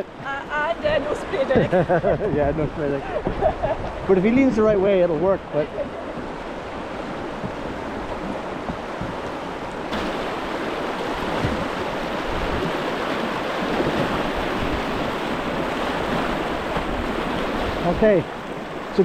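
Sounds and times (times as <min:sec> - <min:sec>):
river water rushing: 0:04.5 - 0:19.0.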